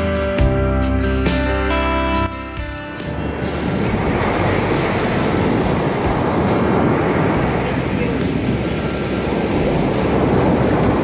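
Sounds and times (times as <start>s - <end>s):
sea waves: 2.9s - 11.0s
wind buffeting microphone: 2.9s - 11.0s
wind rushing: 2.9s - 11.0s.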